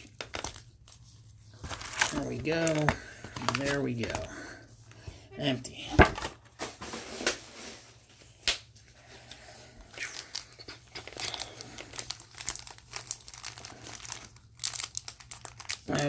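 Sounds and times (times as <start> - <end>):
plastic wrapping crinkling and tearing: 0.0 - 4.4, 9.9 - 16.0.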